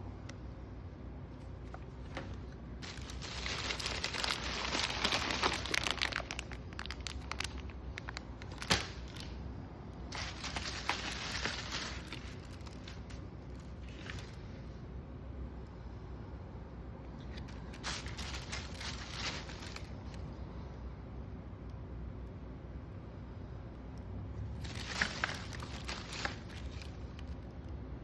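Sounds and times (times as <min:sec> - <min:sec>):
packaging crinkling: 0:01.7 - 0:09.4, 0:10.1 - 0:14.4, 0:17.2 - 0:20.3, 0:24.6 - 0:27.4.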